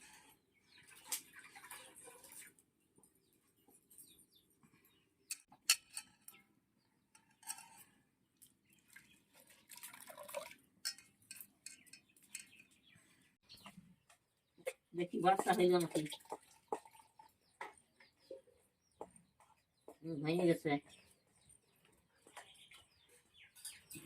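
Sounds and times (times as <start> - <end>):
water dripping and splashing: 0.8 - 2.7, 8.4 - 12.5, 14.7 - 18.4
metal utensils clinking: 5.3 - 6.4, 10.8 - 12.7, 23.5 - 24.0.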